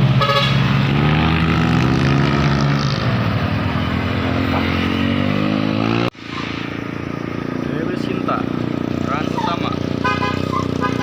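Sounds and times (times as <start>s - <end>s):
bus engine passing: 0.0s - 11.0s.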